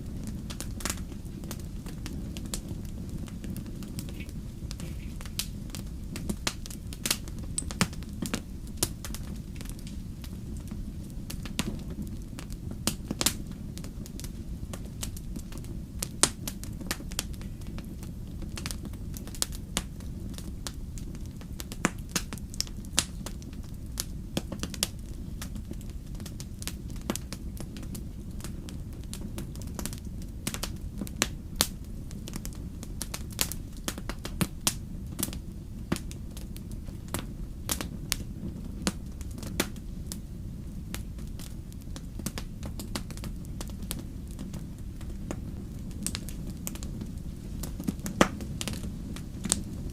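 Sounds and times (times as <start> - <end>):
campfire crackling: 0.0 - 49.9
steady low rumble: 0.0 - 49.9.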